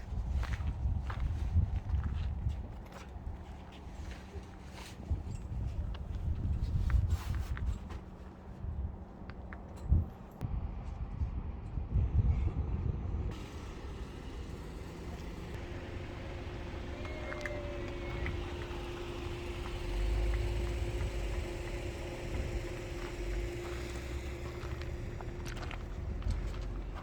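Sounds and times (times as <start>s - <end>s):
constant hum: 12.8s - 27.0s
road vehicle rumble: 13.2s - 27.0s.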